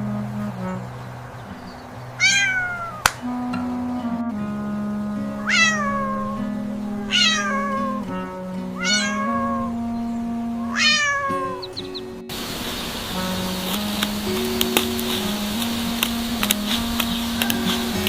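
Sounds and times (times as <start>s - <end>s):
background music with held notes: 0.0s - 18.0s
cat meowing: 2.2s - 3.1s, 5.4s - 9.8s, 10.7s - 11.8s.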